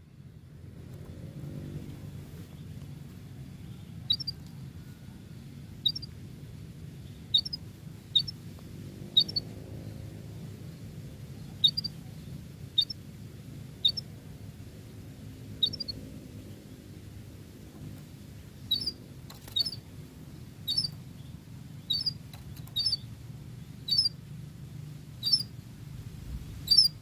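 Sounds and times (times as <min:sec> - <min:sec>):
steady low hum: 0:00.0 - 0:27.0
canary chirping: 0:03.7 - 0:04.4, 0:05.8 - 0:06.2, 0:07.0 - 0:08.4, 0:09.1 - 0:09.5, 0:10.8 - 0:13.0, 0:13.7 - 0:14.1, 0:15.6 - 0:16.0, 0:18.6 - 0:24.3, 0:25.1 - 0:25.6, 0:26.6 - 0:27.0.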